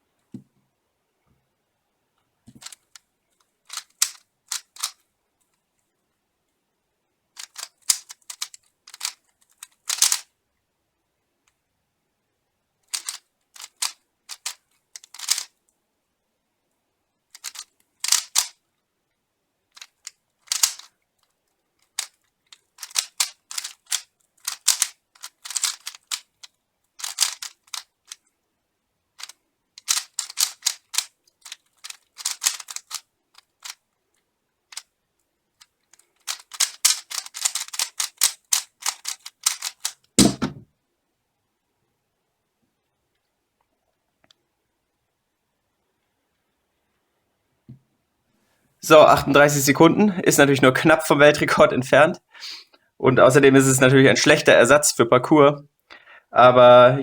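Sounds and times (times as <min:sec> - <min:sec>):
speed cube plastic clicks: 0:02.5 - 0:05.6, 0:07.4 - 0:10.3, 0:12.9 - 0:15.6, 0:17.3 - 0:18.6, 0:19.7 - 0:28.2, 0:29.2 - 0:33.8, 0:34.7 - 0:34.9, 0:35.6 - 0:40.4.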